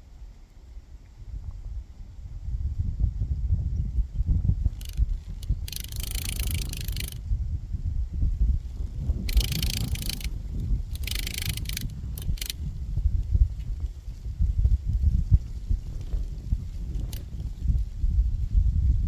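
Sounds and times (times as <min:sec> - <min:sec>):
low wind rumble on microphone: 0:00.0 - 0:19.0
dry leaf rattling in wind: 0:02.1 - 0:19.0
short clicks: 0:04.7 - 0:07.2, 0:09.3 - 0:12.6.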